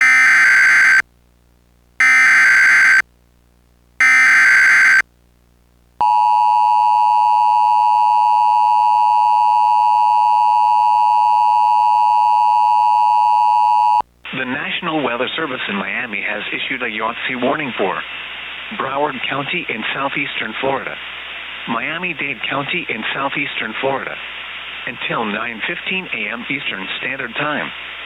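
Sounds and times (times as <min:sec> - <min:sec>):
data bursts: 0:00.0 - 0:01.0, 0:02.0 - 0:03.0, 0:04.0 - 0:05.0
two-tone attention signal: 0:02.0 - 0:03.0, 0:04.0 - 0:05.0.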